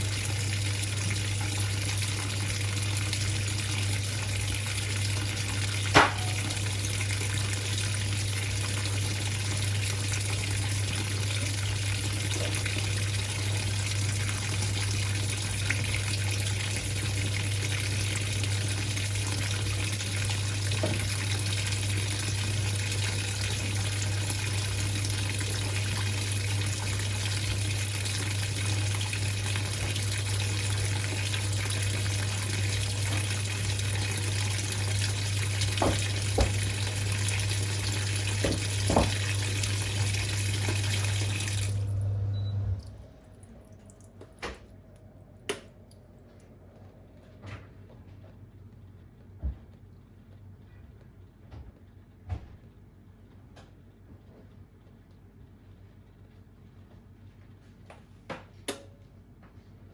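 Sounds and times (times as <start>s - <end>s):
water pouring into washing machine: 0.0s - 42.1s
low steady hum: 0.0s - 57.8s.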